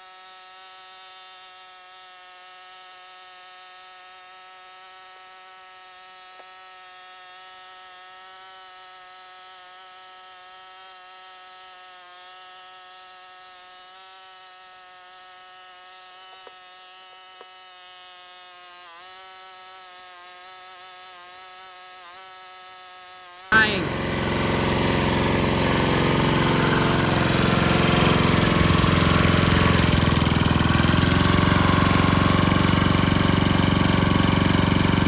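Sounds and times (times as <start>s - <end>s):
lawnmower engine buzzing: 23.3s - 35.0s.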